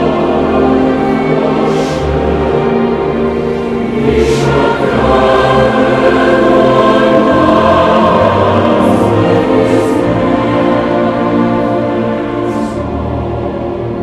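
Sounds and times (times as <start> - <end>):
choir singing sustained chords: 0.0 - 14.0
musical accompaniment: 0.0 - 14.0.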